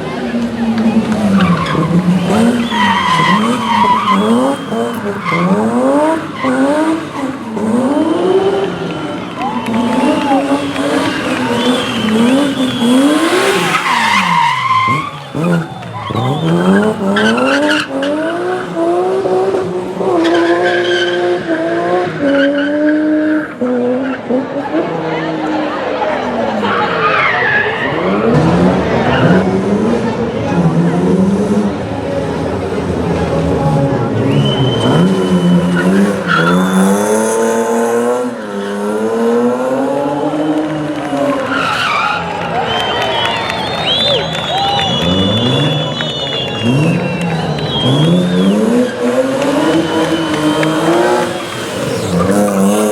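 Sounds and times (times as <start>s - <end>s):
rally car engine accelerating: 0.0s - 52.9s
tyres squealing: 0.9s - 18.8s, 41.1s - 52.9s.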